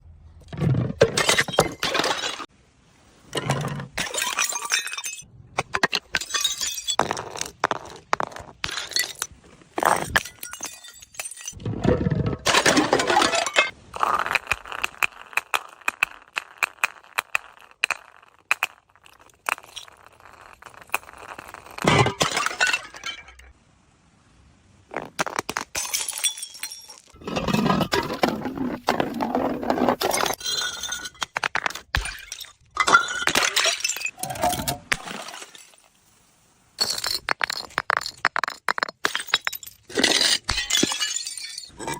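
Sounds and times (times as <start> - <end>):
glass bottles shattering: 1.0 - 2.5, 3.4 - 7.5, 8.6 - 11.6, 12.2 - 23.5, 25.4 - 36.0, 36.8 - 41.9
glass pieces tinkling: 9.9 - 11.6, 25.8 - 28.2, 36.8 - 41.8.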